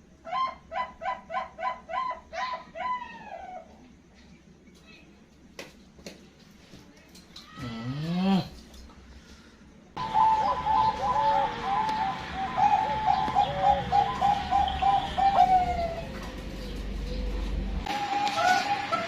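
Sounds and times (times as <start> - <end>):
dove cooing song: 0.3 - 3.7, 10.0 - 19.0.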